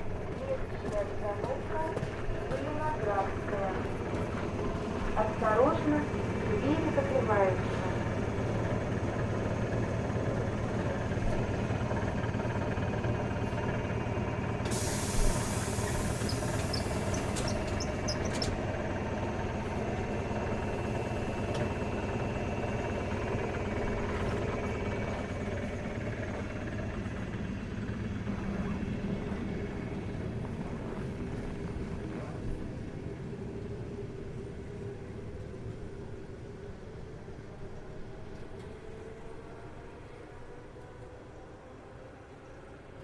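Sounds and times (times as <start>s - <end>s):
train humming: 0.0s - 43.0s
hiss of released air: 14.7s - 17.8s.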